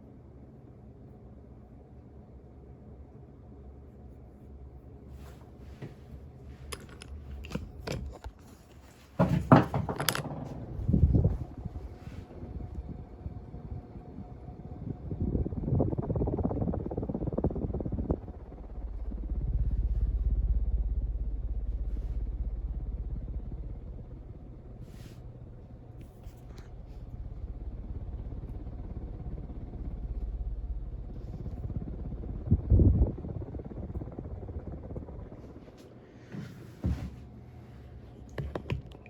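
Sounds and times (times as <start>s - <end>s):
ceiling fan motor hum: 0.0s - 39.0s
low rumble: 10.0s - 36.0s.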